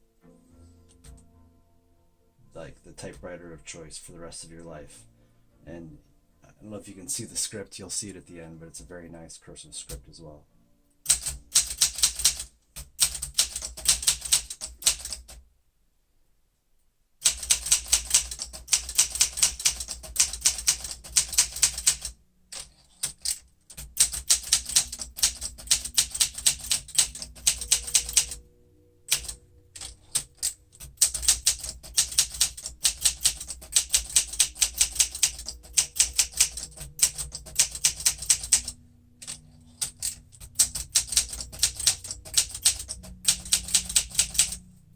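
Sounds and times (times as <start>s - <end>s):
typewriter key strikes: 11.1s - 15.4s, 17.2s - 28.4s, 29.1s - 44.6s.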